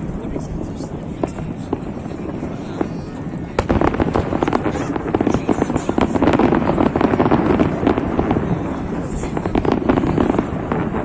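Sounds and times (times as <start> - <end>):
fireworks crackling bangs: 0.0 - 11.0.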